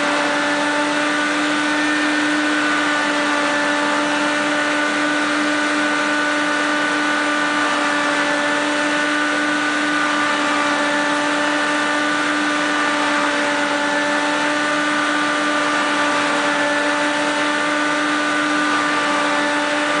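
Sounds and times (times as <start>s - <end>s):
vacuum cleaner motor running: 0.0s - 20.0s.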